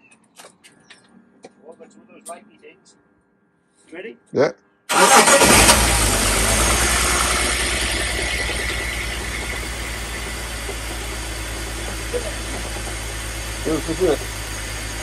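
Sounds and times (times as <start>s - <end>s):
car engine idling with misfire: 4.9s - 15.0s.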